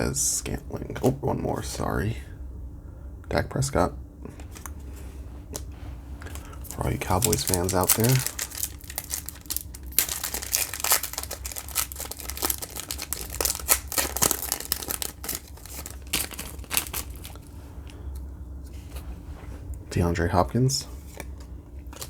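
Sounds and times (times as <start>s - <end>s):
wrapper tearing and crinkling: 6.2s - 17.6s.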